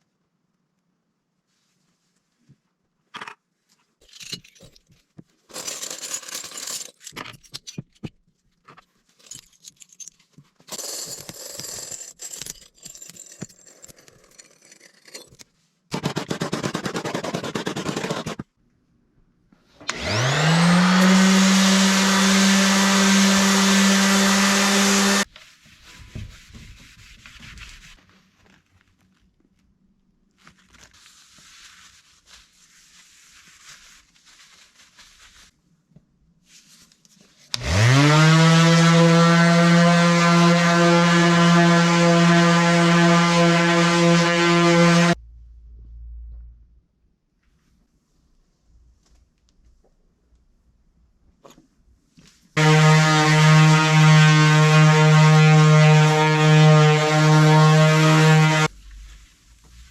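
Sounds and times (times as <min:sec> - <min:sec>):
scraping and rubbing: 0:04.0 - 0:18.5, 0:23.4 - 0:29.4, 0:30.4 - 0:35.6, 0:55.6 - 0:59.9
power tool motor running: 0:19.8 - 0:25.3, 0:37.6 - 0:45.2, 0:52.6 - 0:58.7.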